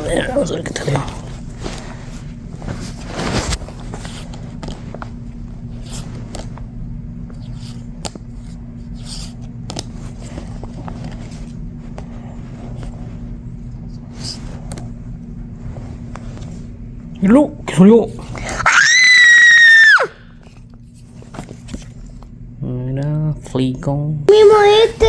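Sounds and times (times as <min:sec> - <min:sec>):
steady low hum: 0:00.0 - 0:25.0.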